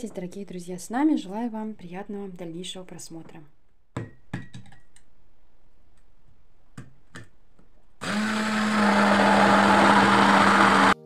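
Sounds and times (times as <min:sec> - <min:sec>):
immersion blender motor hum: 0:08.0 - 0:11.0.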